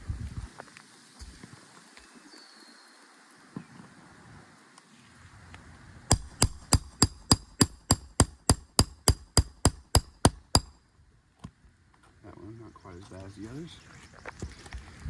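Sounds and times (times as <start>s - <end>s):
hammer striking metal nail puller: 6.1s - 10.7s.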